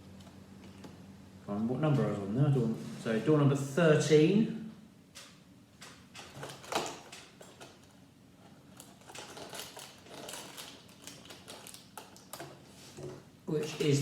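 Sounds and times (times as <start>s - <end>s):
plastic bricks clicking and rattling: 8.8s - 12.5s.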